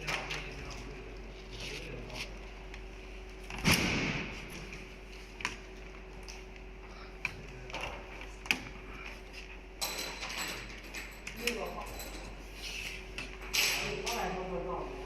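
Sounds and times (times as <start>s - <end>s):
steady machine hum: 0.0s - 15.0s
loud clunk: 3.6s - 4.4s.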